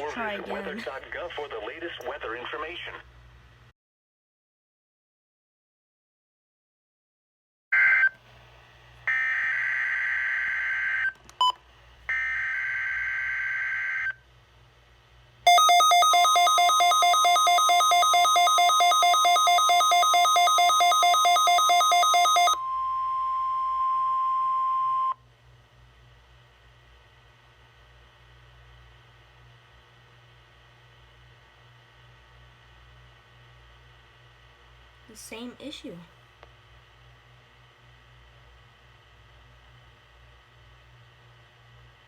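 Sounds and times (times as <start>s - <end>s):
pulsing electronic alarm: 9.1s - 11.1s, 12.1s - 14.2s, 15.5s - 25.2s.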